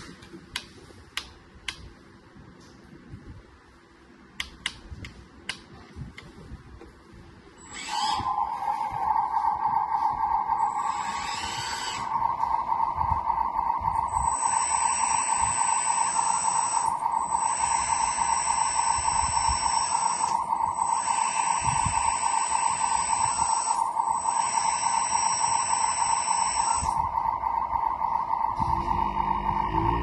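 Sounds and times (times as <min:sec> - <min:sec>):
electric motor steady tone: 0:07.6 - 0:09.7, 0:10.5 - 0:13.5, 0:14.1 - 0:30.0
motor whine with gear noise: 0:07.6 - 0:30.0.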